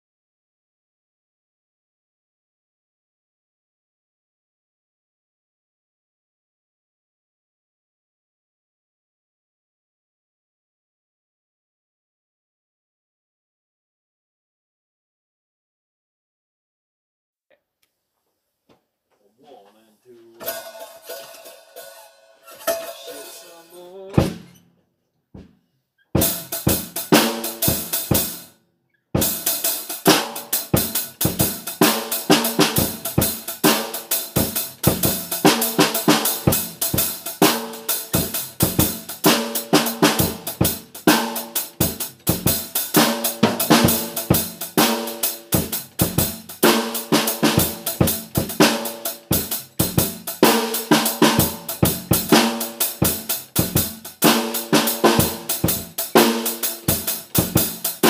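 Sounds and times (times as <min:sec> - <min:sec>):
music with drum kit beat: 0:20.4 - 0:24.6, 0:26.2 - 0:28.5, 0:29.2 - 0:58.0.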